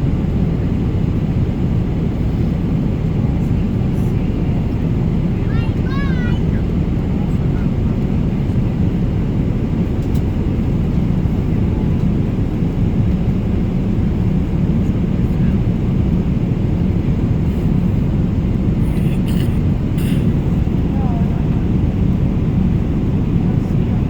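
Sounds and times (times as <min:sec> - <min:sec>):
vehicle rumble: 0:13.0 - 0:23.1.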